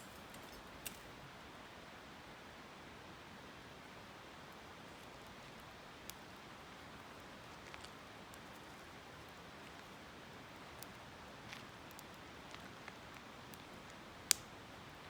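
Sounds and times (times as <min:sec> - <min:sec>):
campfire crackling: 0:00.0 - 0:01.4, 0:03.5 - 0:15.0.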